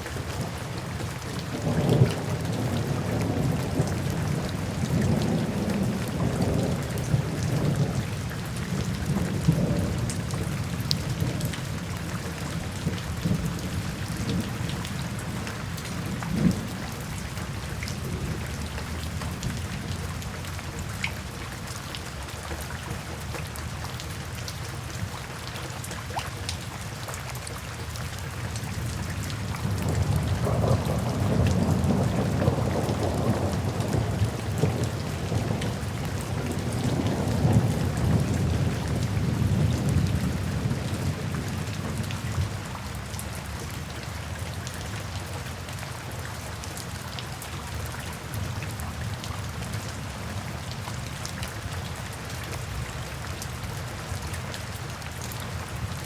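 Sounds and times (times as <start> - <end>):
steady rainfall hissing: 0.0 - 24.9, 27.8 - 54.9
rolling rumble of thunder: 0.3 - 20.8, 28.8 - 43.2.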